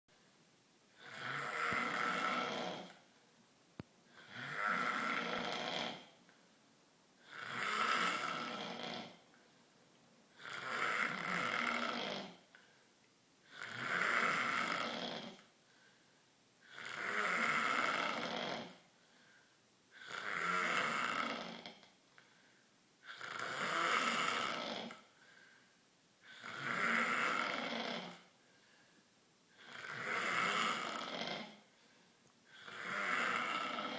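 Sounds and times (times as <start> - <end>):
man snoring: 1.0 - 3.0, 4.1 - 6.2, 7.2 - 9.2, 10.4 - 12.5, 13.5 - 15.4, 16.6 - 18.8, 20.0 - 21.8, 23.0 - 25.0, 26.2 - 28.3, 29.6 - 31.6, 32.5 - 33.9.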